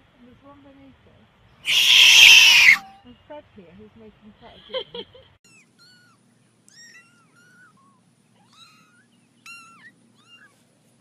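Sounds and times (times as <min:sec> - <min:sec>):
kitten mewing: 0:01.7 - 0:02.8.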